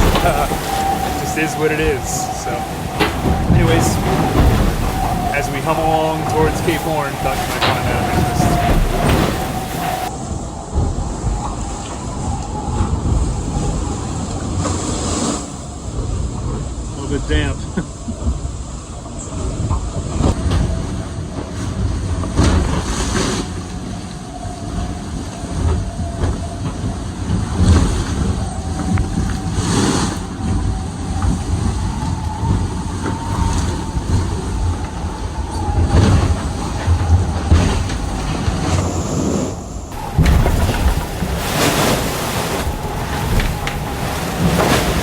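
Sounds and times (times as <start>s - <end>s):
wavering hum of foils: 0.0s - 12.7s, 30.1s - 45.0s
low rumble of yacht hull: 0.0s - 45.0s
water rushing past hull: 0.0s - 45.0s.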